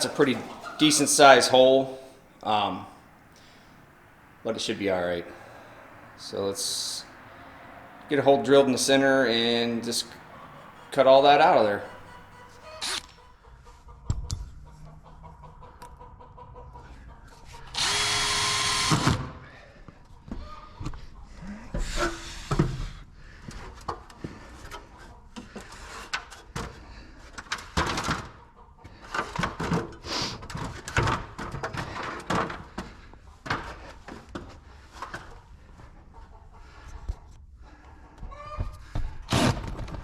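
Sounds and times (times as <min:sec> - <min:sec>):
power drill drilling: 0:12.0 - 0:13.1, 0:17.7 - 0:19.3.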